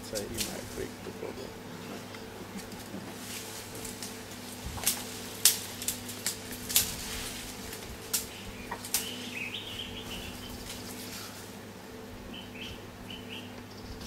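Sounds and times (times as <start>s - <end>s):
low hum: 0.0s - 14.0s
sharp cracks and clicks: 4.8s - 6.9s, 8.1s - 9.2s.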